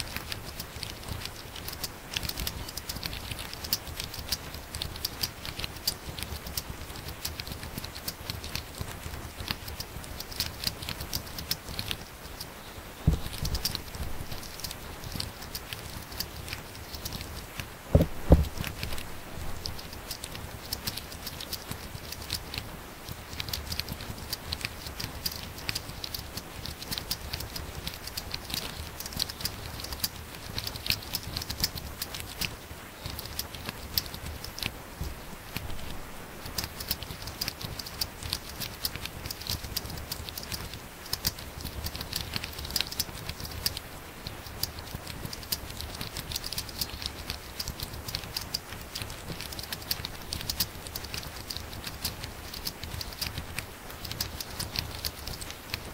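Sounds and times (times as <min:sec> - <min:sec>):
loud thumps: 0:13.1 - 0:14.3, 0:17.9 - 0:19.6
laptop keyboard typing: 0:13.1 - 0:55.9.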